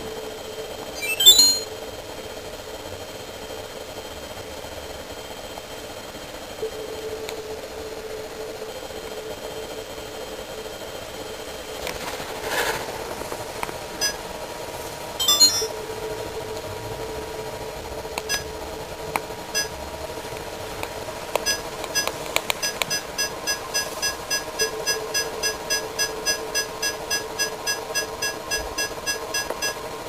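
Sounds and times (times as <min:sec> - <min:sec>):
rapid repeated beeping: 0:01.0 - 0:01.7, 0:14.0 - 0:14.2, 0:15.2 - 0:15.7, 0:18.2 - 0:18.6, 0:19.4 - 0:19.8, 0:21.4 - 0:30.0
short beeps: 0:01.0 - 0:01.7, 0:15.2 - 0:15.7, 0:18.3 - 0:18.5, 0:21.4 - 0:29.8.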